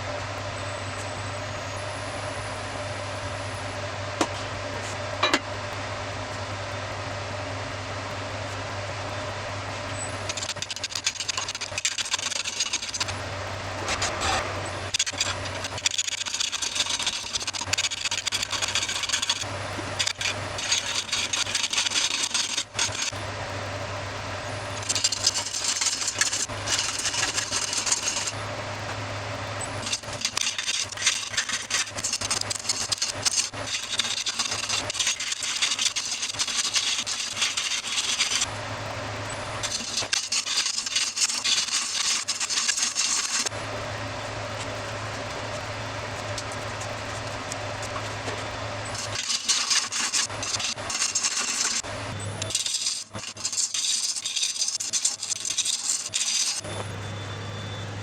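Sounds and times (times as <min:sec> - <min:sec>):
woodworking machine motor hum: 0:00.0 - 0:58.0
tool rasping on wood: 0:10.1 - 0:23.2, 0:24.5 - 0:28.4, 0:29.6 - 0:38.5, 0:39.4 - 0:43.5, 0:47.8 - 0:51.8, 0:52.4 - 0:56.6.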